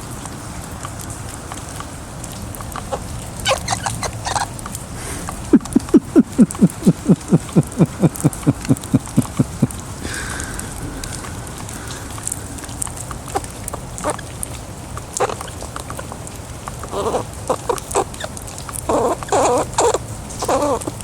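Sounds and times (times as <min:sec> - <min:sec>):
squirrel squeaking: 0:02.7 - 0:04.7, 0:05.3 - 0:09.7, 0:13.2 - 0:21.0.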